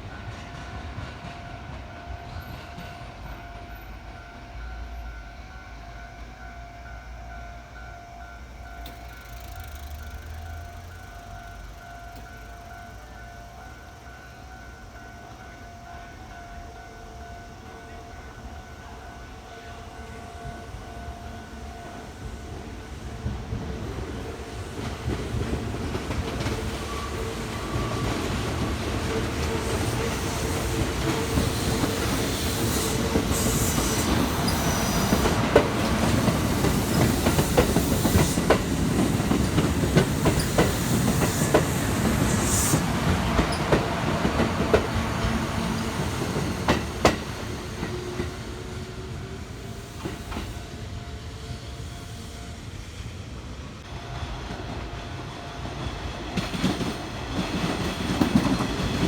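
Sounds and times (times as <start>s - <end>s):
electric train rumbling past: 0.0s - 59.0s
wheels clicking over rail joints: 8.8s - 13.2s, 24.8s - 48.5s.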